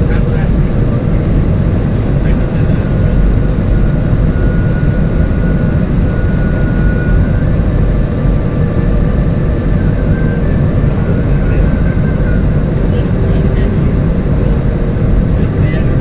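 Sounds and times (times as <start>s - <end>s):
airliner engines and rushing air: 0.0s - 16.0s
faint steady whine: 0.0s - 16.0s.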